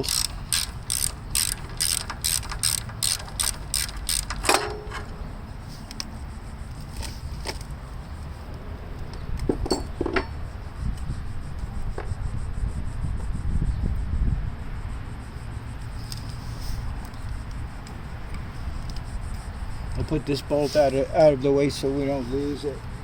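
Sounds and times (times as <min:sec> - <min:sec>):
socket ratchet clicking: 0:00.0 - 0:05.1
metal clinks: 0:09.6 - 0:10.4.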